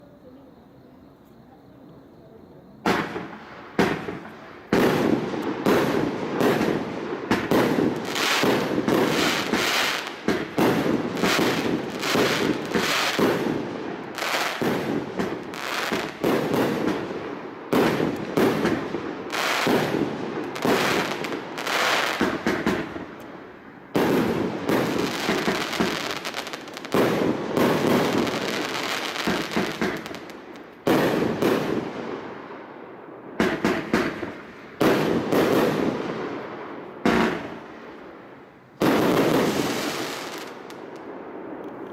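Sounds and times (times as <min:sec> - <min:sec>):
firework cake firing: 0:02.9 - 0:23.2, 0:23.9 - 0:32.0.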